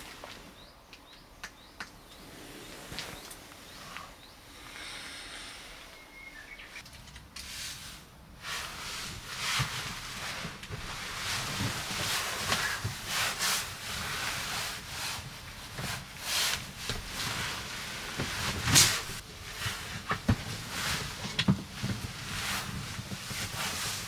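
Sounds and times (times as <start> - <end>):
rustling and rubbing swishes: 2.2 - 4.2, 7.4 - 24.0.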